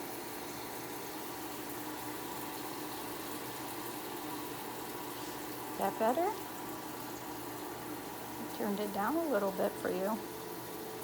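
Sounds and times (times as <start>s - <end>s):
water running from a faucet: 0.0s - 11.0s.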